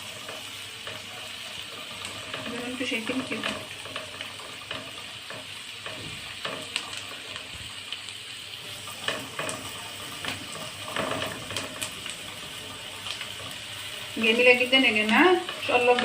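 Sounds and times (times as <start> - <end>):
onion sizzling in a pan: 0.0 - 16.0
spoon scraping a pan: 8.8 - 16.0.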